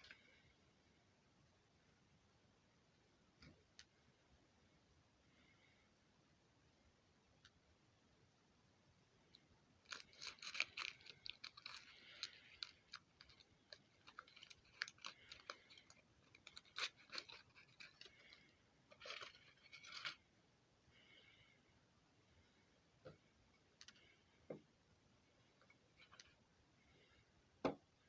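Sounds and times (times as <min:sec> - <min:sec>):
foil wrapper crinkling: 0:09.8 - 0:20.2.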